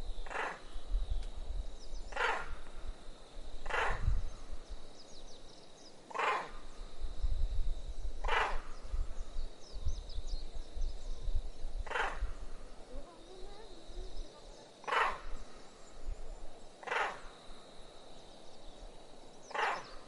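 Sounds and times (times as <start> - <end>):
low wind rumble: 0.0 - 20.0
faint chirps: 0.2 - 20.0
animal calling harshly: 3.7 - 4.0, 14.9 - 15.2, 19.6 - 19.9.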